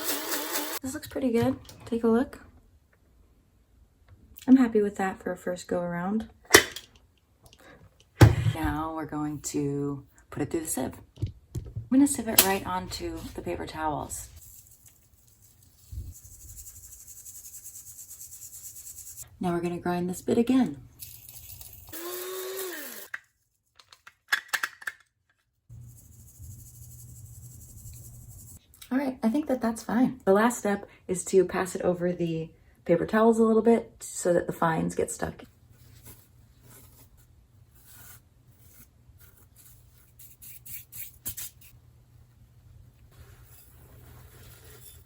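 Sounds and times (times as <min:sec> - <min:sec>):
electric coffee grinder whirring: 0:00.0 - 0:00.8, 0:21.7 - 0:23.2
clicks and knocks of handling: 0:23.8 - 0:25.4.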